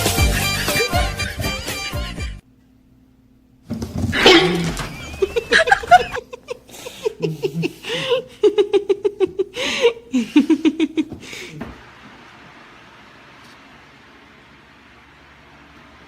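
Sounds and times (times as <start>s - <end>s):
person giggling: 4.2s - 11.7s.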